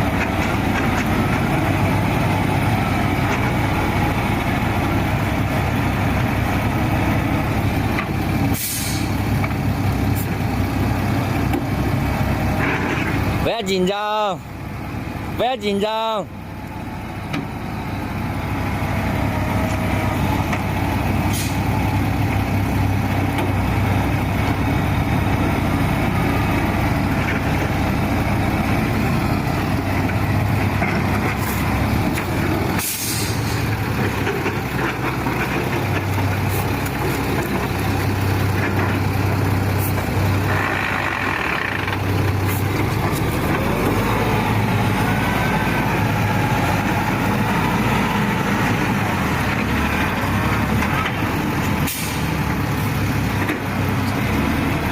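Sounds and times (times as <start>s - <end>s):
diesel truck engine running: 0.0s - 54.9s
short hiss: 8.6s - 9.2s, 32.8s - 33.6s.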